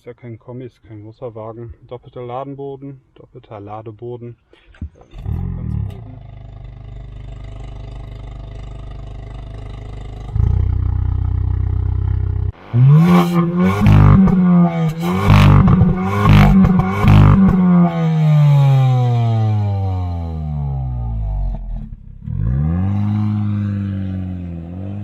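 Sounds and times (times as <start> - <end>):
exhaust cracks: 4.7 - 25.0
car engine idling and revving: 5.7 - 25.0.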